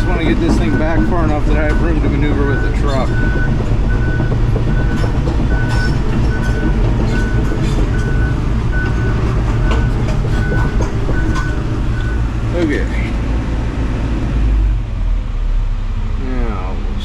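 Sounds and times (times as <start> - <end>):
travel alarm beeps: 0.0 - 12.3
tracks clanking: 0.0 - 14.9
excavator engine running: 0.0 - 15.4.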